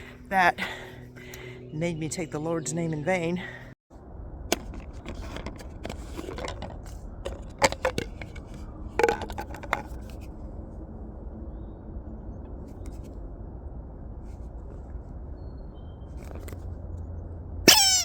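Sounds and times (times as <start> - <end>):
steady low rumble: 0.0 - 17.7
sharp clicks and scrapes: 4.5 - 10.3.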